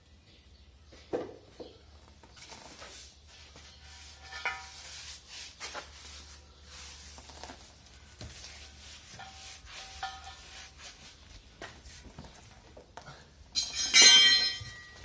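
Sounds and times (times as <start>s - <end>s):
tire scraping on steel rim: 2.3s - 11.2s.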